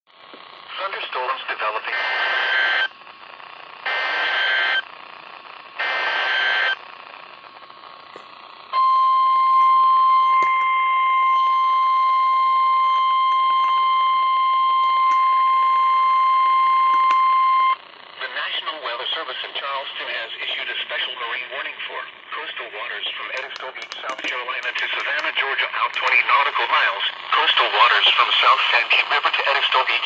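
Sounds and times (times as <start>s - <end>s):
steady warning alarm tone: 8.8s - 17.8s.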